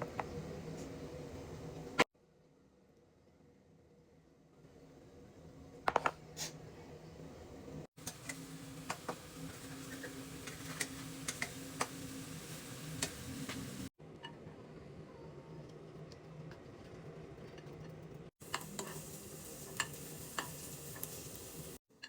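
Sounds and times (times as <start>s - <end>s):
food sizzling in a frying pan: 8.0s - 13.9s, 18.4s - 21.8s.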